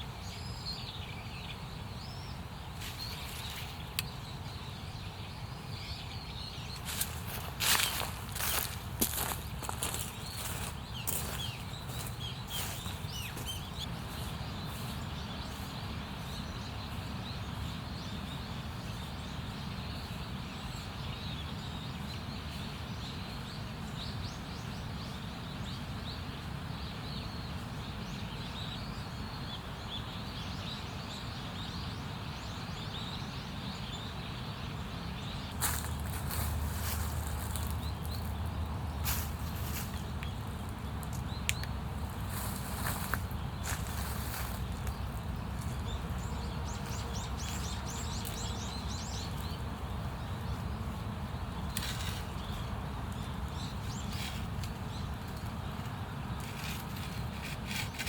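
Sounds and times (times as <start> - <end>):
bird chirps: 5.9 - 18.4.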